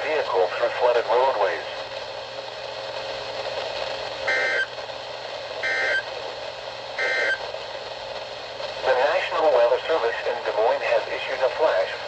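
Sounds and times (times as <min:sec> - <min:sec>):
broadcast hiss: 0:00.0 - 0:12.0
digital data tone bursts: 0:04.2 - 0:04.7, 0:05.6 - 0:06.1, 0:07.0 - 0:07.4.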